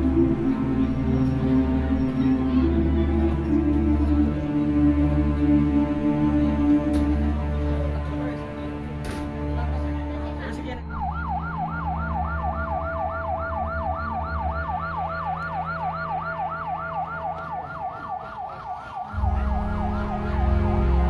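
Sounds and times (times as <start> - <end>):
heavier low drone: 0.0 - 17.9, 19.1 - 21.0
low steady drone: 0.0 - 17.9, 19.0 - 21.0
siren yelping: 10.9 - 21.0.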